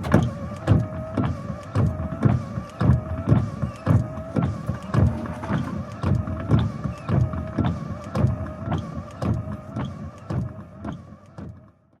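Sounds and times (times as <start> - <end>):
rhythmic clicking: 0.0 - 11.4
wavering machine whine: 4.6 - 6.6.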